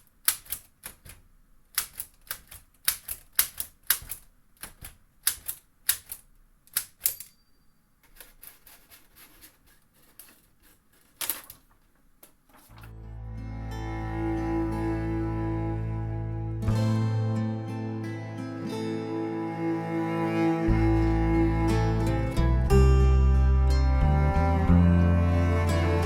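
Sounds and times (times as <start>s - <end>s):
typewriter key clacks: 0.0s - 7.4s.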